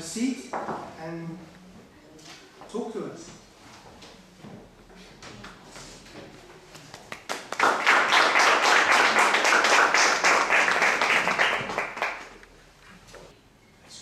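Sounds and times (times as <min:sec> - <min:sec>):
audience applauding: 0:07.1 - 0:12.4.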